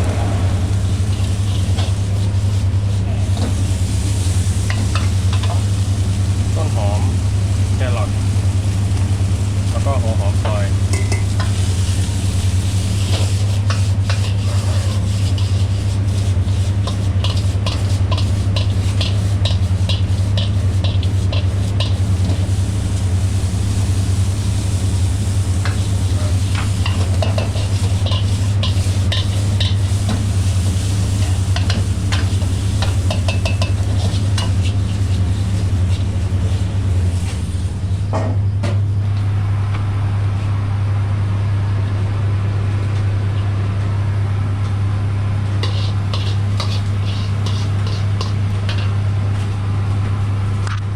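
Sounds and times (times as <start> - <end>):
light sizzle: 0.0 - 37.9, 45.6 - 49.6
loud steady low hum: 0.0 - 50.9
metal spatula scraping a pan: 13.0 - 22.4, 26.2 - 30.1, 31.1 - 36.1, 45.6 - 49.0.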